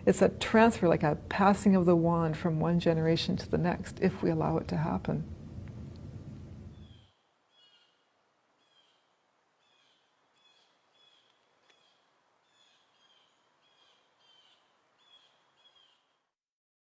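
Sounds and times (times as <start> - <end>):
low outdoor hiss: 0.0 - 16.3
high bird chirps: 6.8 - 8.0, 9.6 - 16.0.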